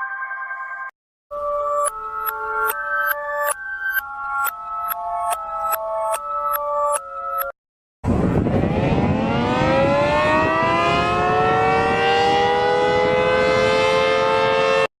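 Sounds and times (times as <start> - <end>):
civil defense siren wailing: 8.1 - 14.9.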